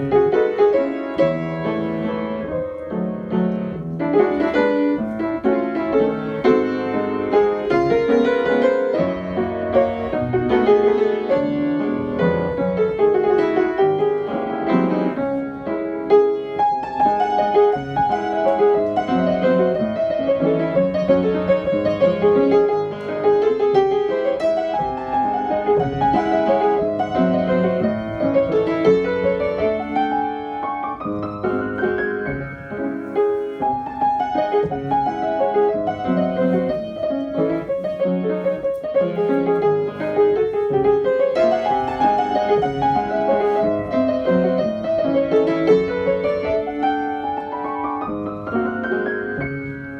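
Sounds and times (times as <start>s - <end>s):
piano music: 0.0s - 49.9s.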